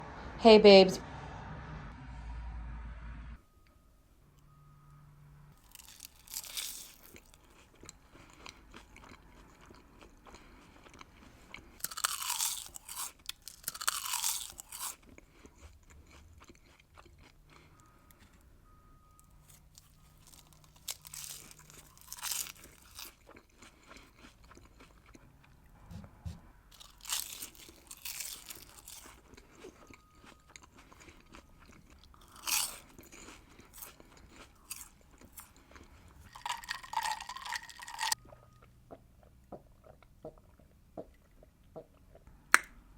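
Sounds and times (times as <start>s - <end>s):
crispy food crunching bites: 5.6s - 17.9s, 19.4s - 25.3s, 26.7s - 38.4s
crunchy chewing: 5.6s - 18.4s, 19.4s - 25.7s, 26.7s - 42.3s.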